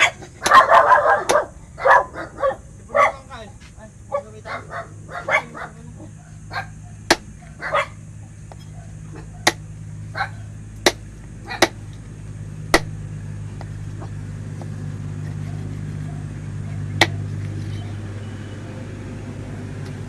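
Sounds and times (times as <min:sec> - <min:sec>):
dog barking: 0:00.0 - 0:03.3, 0:04.1 - 0:08.0, 0:08.6 - 0:10.5, 0:11.4 - 0:11.8, 0:15.5 - 0:17.2
steady low hum: 0:00.0 - 0:20.0
sharp knocks: 0:07.1 - 0:07.3, 0:10.8 - 0:11.0, 0:12.7 - 0:13.0.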